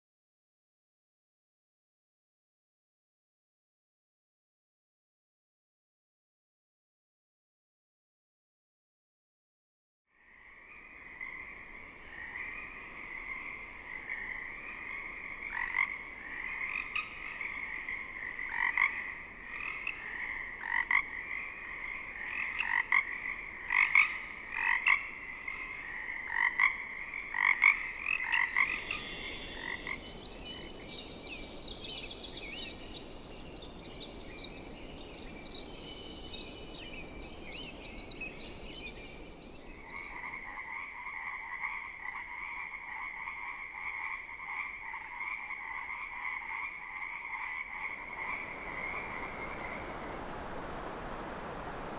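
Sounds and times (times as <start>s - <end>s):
distant frog chorus: 10.3s - 32.4s, 39.8s - 51.9s
songbirds singing: 10.7s - 41.5s, 47.6s - 51.9s.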